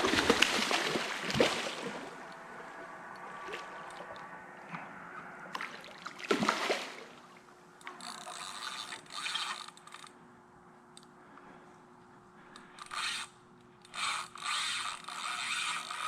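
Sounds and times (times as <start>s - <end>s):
fishing reel gears clicking: 7.8s - 10.2s, 12.6s - 16.0s.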